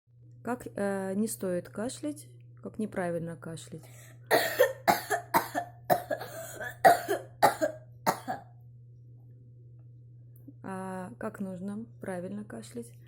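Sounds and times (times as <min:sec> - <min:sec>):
woman coughing hard: 0:04.3 - 0:08.5.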